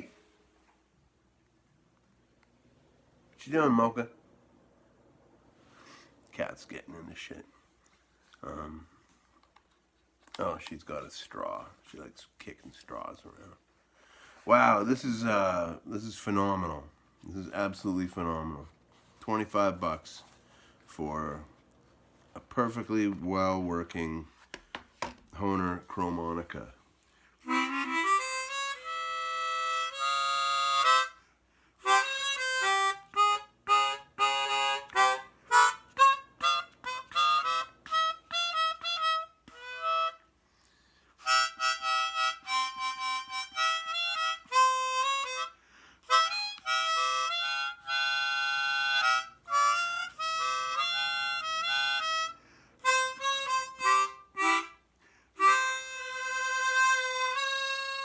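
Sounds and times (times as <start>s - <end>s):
chromatic harmonica playing: 27.4s - 58.0s.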